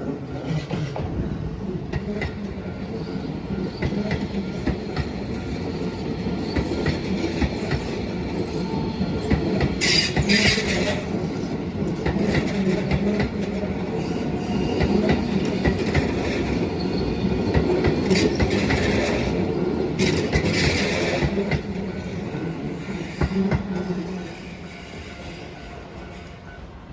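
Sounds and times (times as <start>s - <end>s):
train wheels clattering over rail joints: 0.4s - 23.9s.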